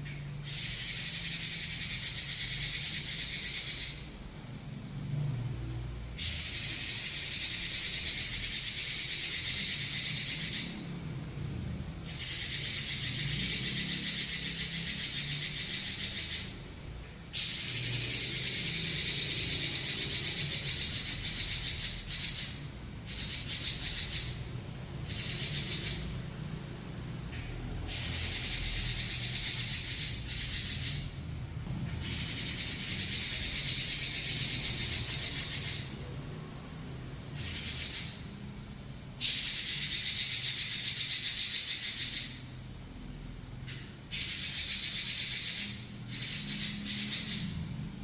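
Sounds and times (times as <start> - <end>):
bird singing rolling trills: 0.0 - 4.3, 5.7 - 48.0.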